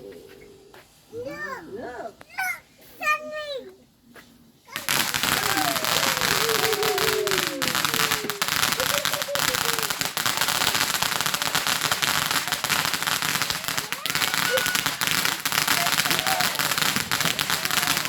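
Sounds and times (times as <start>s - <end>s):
fireworks crackling: 4.7s - 18.0s.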